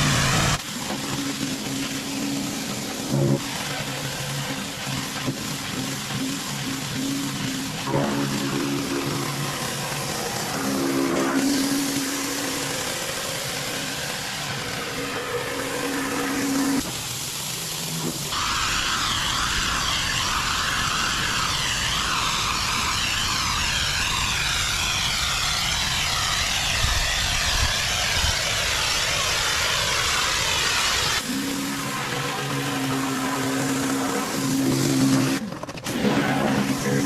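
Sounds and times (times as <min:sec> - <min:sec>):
high-pressure water spray hissing: 0:00.0 - 0:37.0
pressure washer engine humming: 0:00.0 - 0:37.0.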